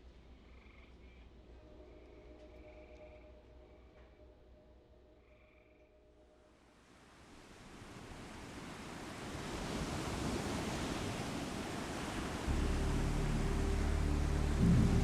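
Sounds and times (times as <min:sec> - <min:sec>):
wind: 0:00.0 - 0:15.0
sea surf: 0:07.5 - 0:15.0
low rumbling drone: 0:12.5 - 0:15.0.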